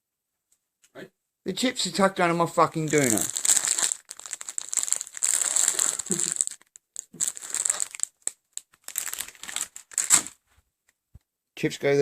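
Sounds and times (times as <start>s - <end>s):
chip bags crinkling: 2.6s - 10.4s.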